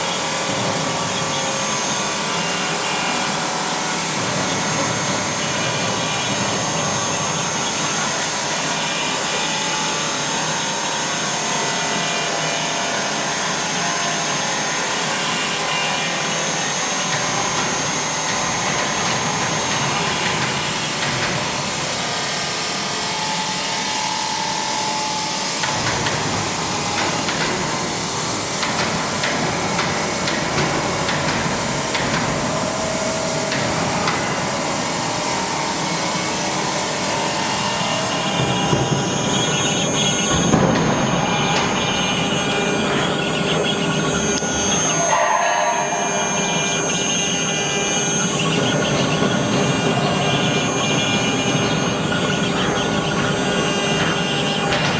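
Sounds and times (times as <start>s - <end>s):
router spindle whining: 0.0s - 54.9s
deeper machine hum: 23.8s - 54.9s
cutting noise: 25.2s - 54.9s.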